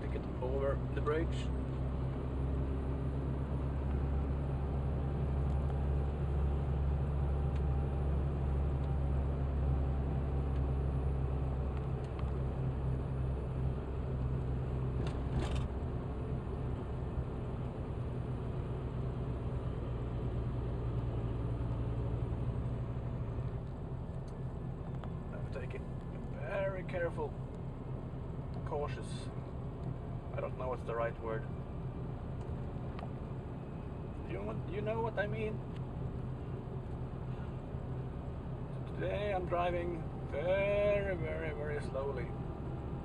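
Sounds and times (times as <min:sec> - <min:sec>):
car engine and road noise: 0:00.0 - 0:43.0.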